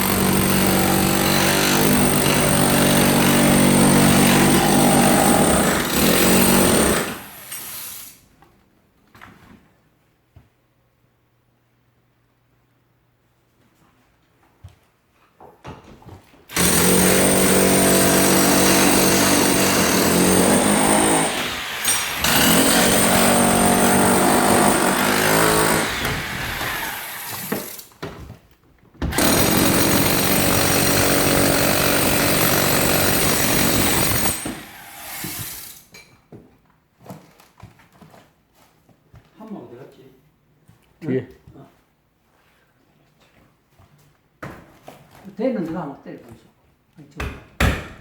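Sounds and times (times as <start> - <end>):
handheld power tool motor: 16.5 - 27.9, 29.1 - 35.8.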